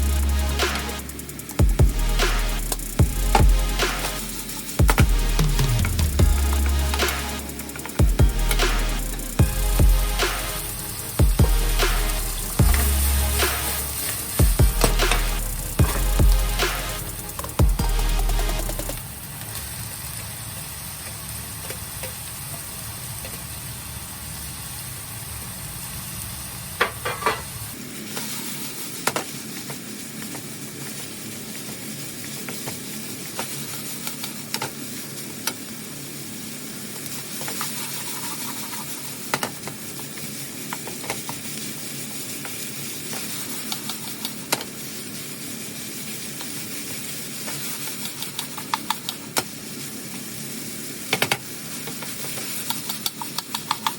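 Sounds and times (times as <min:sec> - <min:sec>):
low hum: 0:00.0 - 0:19.5
food sizzling in a frying pan: 0:01.0 - 0:53.9.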